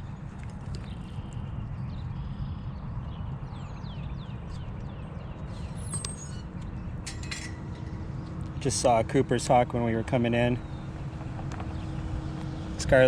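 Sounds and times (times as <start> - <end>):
low rumble of wind: 0.0 - 13.0
short rattle: 7.0 - 8.9.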